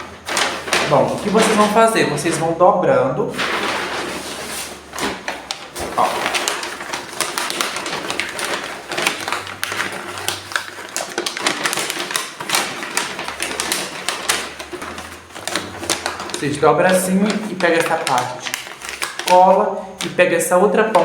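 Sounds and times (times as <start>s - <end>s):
paper crinkling and rustling: 0.0s - 2.6s, 3.3s - 21.0s.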